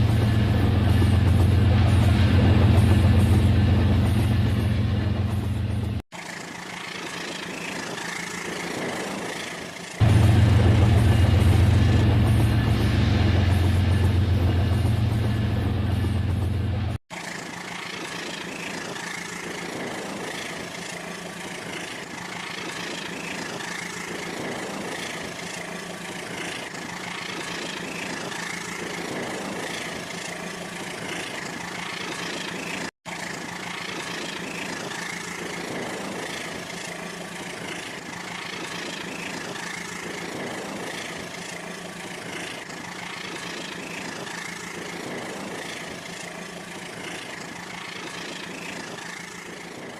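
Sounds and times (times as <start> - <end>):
loud low hum: 10.0 - 17.0
wheels rolling on plastic track: 17.1 - 49.9
toy train motor humming: 17.2 - 49.9.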